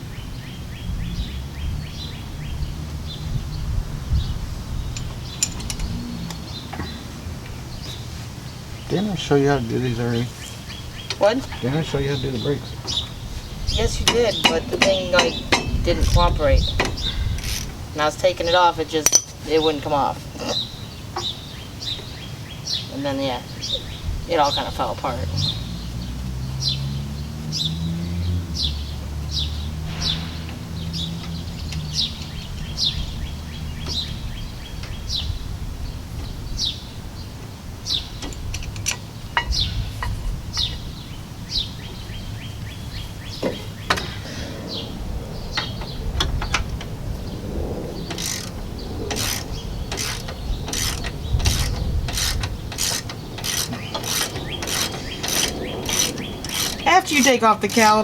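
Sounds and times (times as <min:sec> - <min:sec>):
bird chirping: 0:00.0 - 0:58.0
ratchet wrench clicking: 0:14.0 - 0:17.8, 0:48.1 - 0:58.0.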